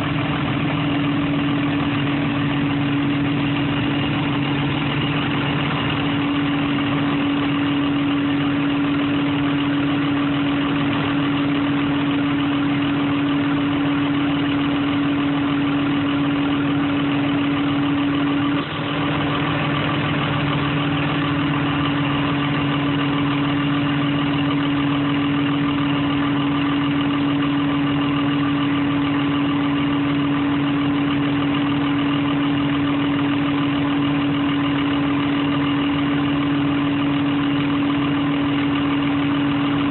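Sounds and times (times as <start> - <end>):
engine idling: 0.0 - 39.9.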